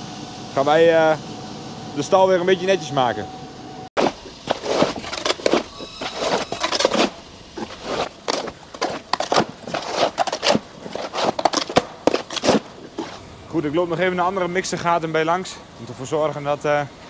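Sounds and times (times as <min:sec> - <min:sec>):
manure scraped across barn floor: 0:04.0 - 0:13.3.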